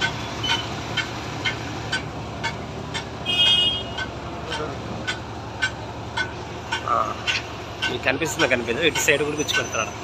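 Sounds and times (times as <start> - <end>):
heavy machinery rumbling: 0.0 - 10.0
traffic engine drone: 0.0 - 10.0
vehicle horn toot: 3.2 - 4.1.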